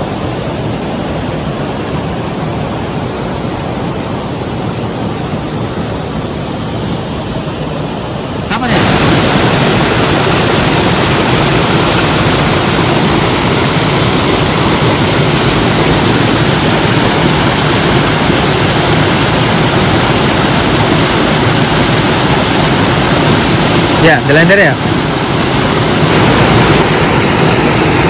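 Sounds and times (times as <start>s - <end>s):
rushing water: 0.0s - 28.0s.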